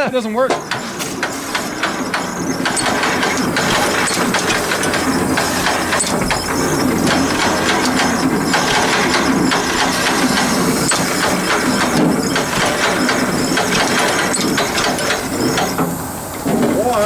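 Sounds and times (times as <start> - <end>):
tractor engine clattering: 0.0 - 17.0.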